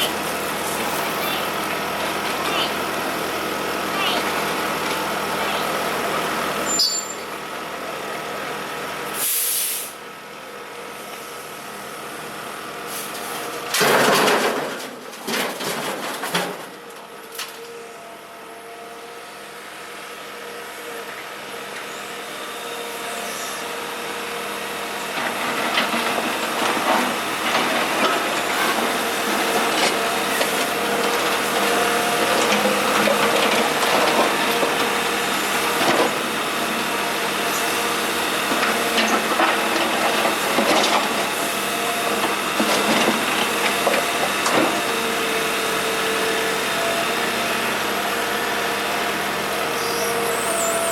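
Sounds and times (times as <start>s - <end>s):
excavator engine running: 0.0s - 9.2s, 10.0s - 50.9s
asphalt clattering and scraping: 13.2s - 17.5s, 25.1s - 36.5s, 38.4s - 45.0s.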